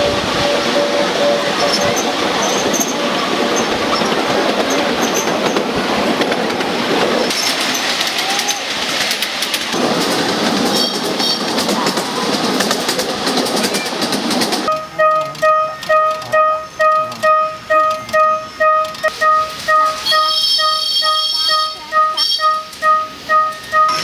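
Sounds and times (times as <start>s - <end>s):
electronic two-pitch crossing alarm: 0.0s - 3.2s, 14.7s - 24.0s
miniature train rumbling over rails: 0.0s - 24.0s.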